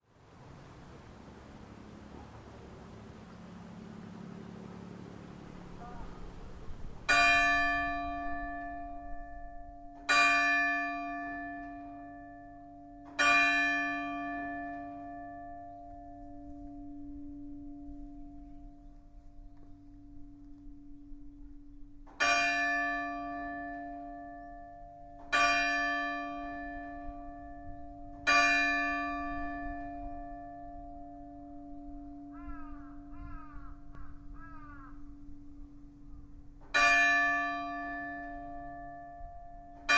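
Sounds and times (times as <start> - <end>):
church bell ringing: 1.2 - 39.9.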